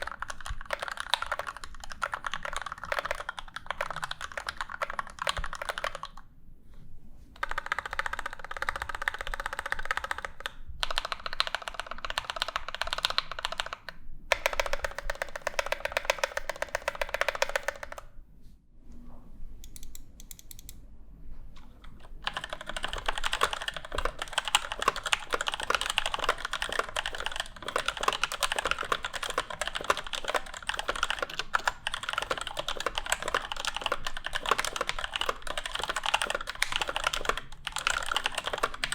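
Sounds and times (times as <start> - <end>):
mechanical keyboard typing: 0.0 - 6.3, 7.4 - 18.1, 19.6 - 20.8, 21.8 - 38.9.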